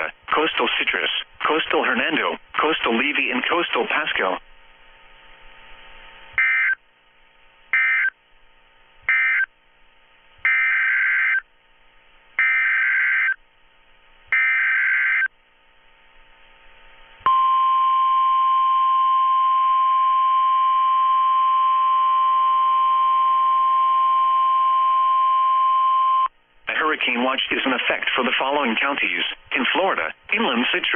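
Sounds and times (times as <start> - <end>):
screechy digital chirps: 6.4 - 6.8, 7.8 - 8.1, 9.1 - 9.5, 10.5 - 11.4, 12.4 - 13.4, 14.3 - 15.3.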